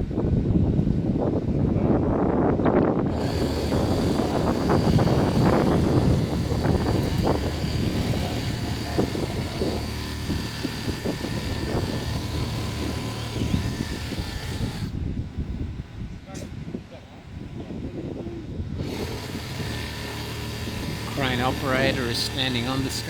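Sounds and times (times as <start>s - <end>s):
crane engine running: 3.0s - 16.0s, 18.8s - 23.0s.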